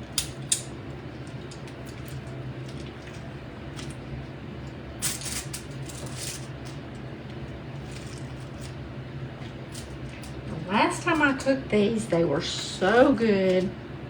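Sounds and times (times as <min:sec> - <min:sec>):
steady low hum: 0:00.0 - 0:14.0
kitchen handling rustles: 0:05.0 - 0:06.8, 0:07.7 - 0:11.6.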